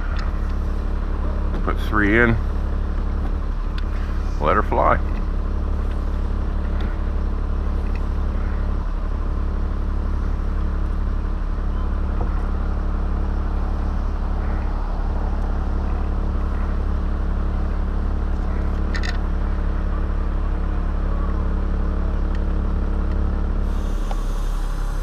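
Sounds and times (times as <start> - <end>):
engine idling: 0.0 - 25.0.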